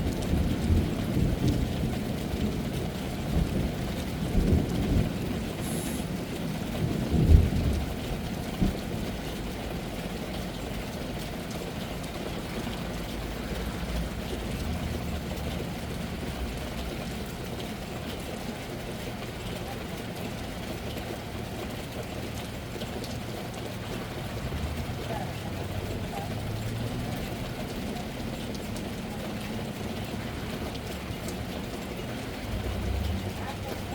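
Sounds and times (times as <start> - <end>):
rolling thunder: 0.0 - 9.2
rain: 0.0 - 33.9.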